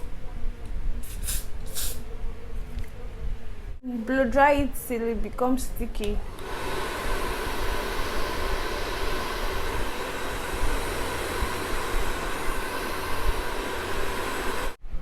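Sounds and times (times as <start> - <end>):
hair dryer blowing: 6.2 - 14.8.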